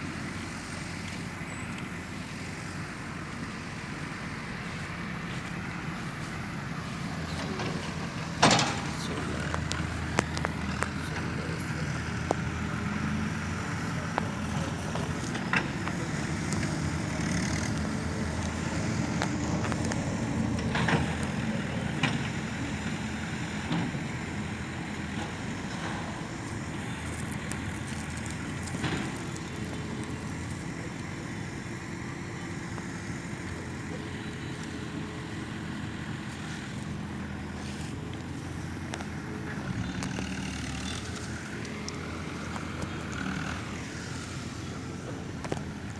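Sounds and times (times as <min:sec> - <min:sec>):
excavator diesel engine running: 0:00.0 - 0:45.9
sharp knocks and clanks: 0:07.3 - 0:10.5.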